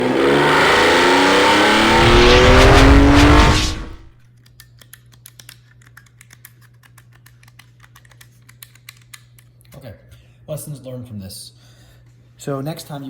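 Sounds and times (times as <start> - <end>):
car engine revving: 0.0 - 4.1.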